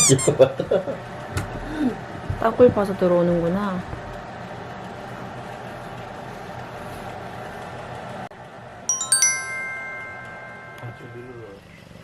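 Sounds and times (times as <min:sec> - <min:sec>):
twinkling chime sound effect: 0:08.9 - 0:11.6.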